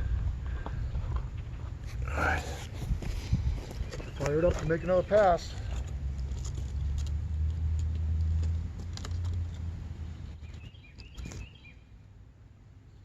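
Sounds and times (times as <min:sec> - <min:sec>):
bird chirping: 0:03.7 - 0:05.8, 0:10.2 - 0:12.0.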